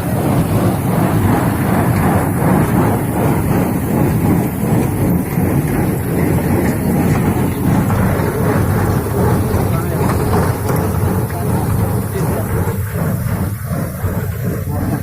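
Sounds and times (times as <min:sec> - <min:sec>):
tractor engine running: 0:00.0 - 0:15.0.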